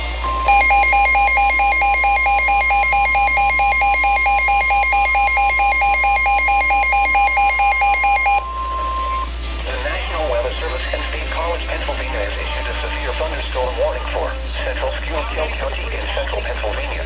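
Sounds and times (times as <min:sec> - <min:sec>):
steady high alarm tone: 0:00.4 - 0:09.2
rapid electronic beeping: 0:00.5 - 0:08.4.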